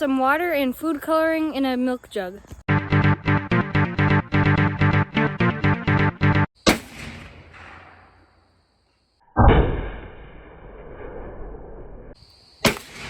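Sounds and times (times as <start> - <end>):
loud blast: 6.6 - 8.1
rifle shot: 6.6 - 8.1, 12.6 - 13.0.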